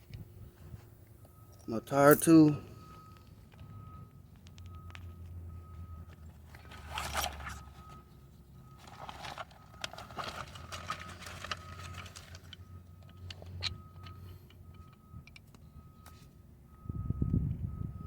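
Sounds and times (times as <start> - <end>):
tool kit rustling and scraping: 6.1 - 8.1, 8.7 - 14.2.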